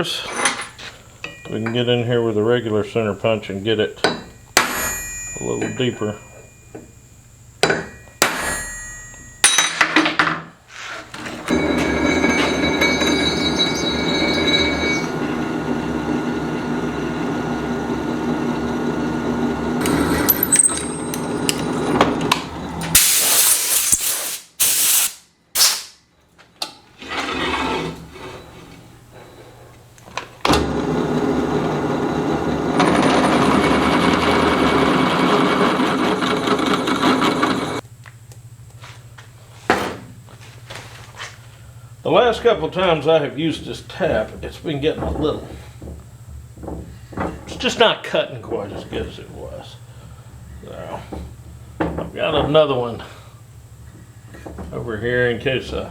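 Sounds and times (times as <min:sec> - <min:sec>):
metal clanks: 0:00.0 - 0:02.0, 0:07.6 - 0:15.2
electric drill boring steel: 0:11.5 - 0:22.0, 0:30.6 - 0:37.8.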